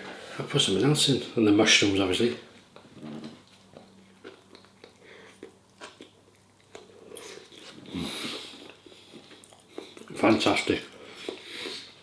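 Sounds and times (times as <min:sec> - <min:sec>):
person chewing food: 0:02.5 - 0:10.2, 0:10.9 - 0:12.0.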